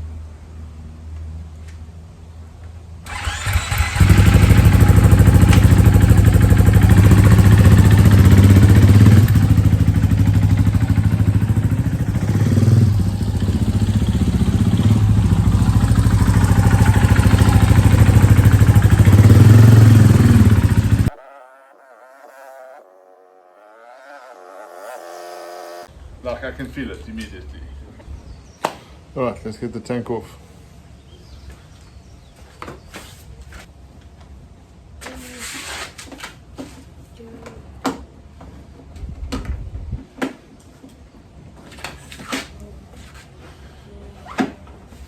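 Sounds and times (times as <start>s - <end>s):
motorcycle engine revving: 3.1s - 25.9s.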